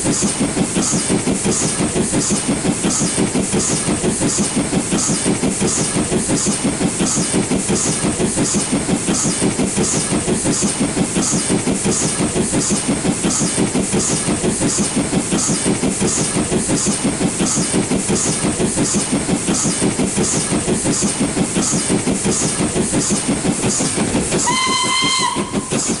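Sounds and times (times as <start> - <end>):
steam locomotive chuffing: 0.0 - 26.0
steam whistle blast: 24.4 - 26.0.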